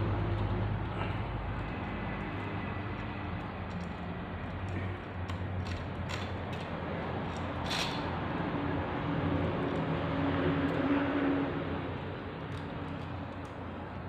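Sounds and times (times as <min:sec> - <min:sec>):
steady background hum: 0:00.0 - 0:14.0
metal scrape: 0:07.3 - 0:08.2.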